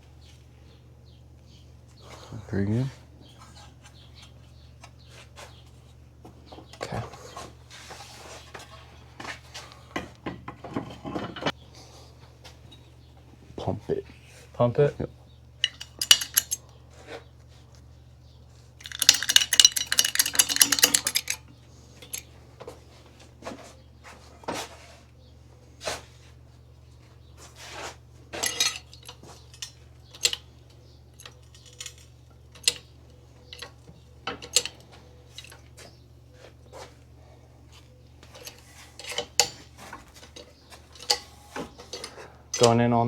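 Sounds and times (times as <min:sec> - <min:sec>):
metal tools clinking: 0:15.6 - 0:16.7, 0:18.8 - 0:22.3, 0:28.3 - 0:35.8, 0:38.2 - 0:43.0
rapid metallic clicks: 0:18.8 - 0:21.4.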